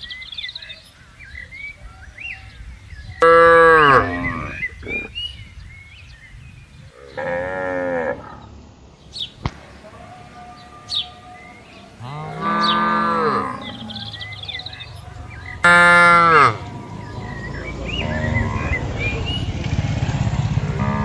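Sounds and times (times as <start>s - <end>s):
cows mooing: 3.2s - 5.1s, 7.0s - 8.5s, 9.8s - 18.8s, 20.7s - 21.0s.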